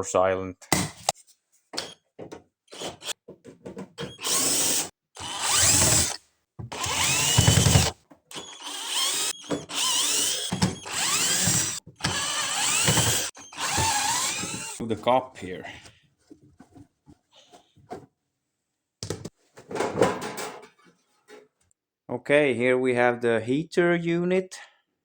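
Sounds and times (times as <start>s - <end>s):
power drill whining: 2.7s - 3.2s, 4.0s - 14.8s.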